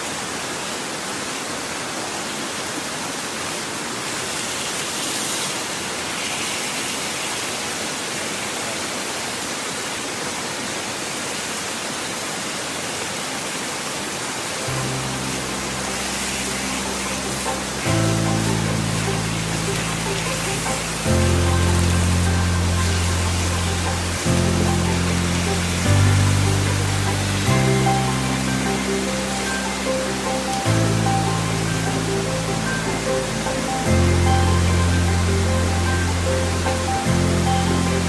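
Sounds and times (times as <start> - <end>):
mountain stream rushing: 0.0 - 38.0
background music with low notes: 14.7 - 38.0.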